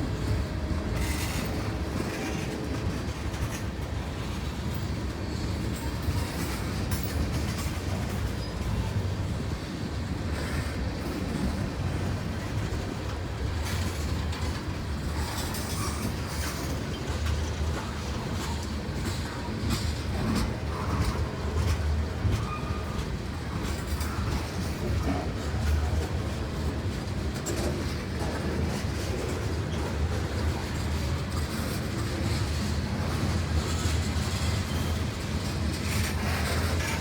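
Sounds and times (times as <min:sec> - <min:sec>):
freight train rumbling: 0:00.0 - 0:37.0
wheels clacking over rail joints: 0:00.0 - 0:37.0
faint wheel squeal: 0:22.3 - 0:23.1.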